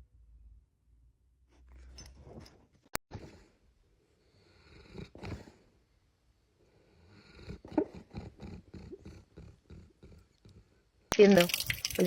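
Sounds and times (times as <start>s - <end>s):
cat purring: 7.0s - 10.8s.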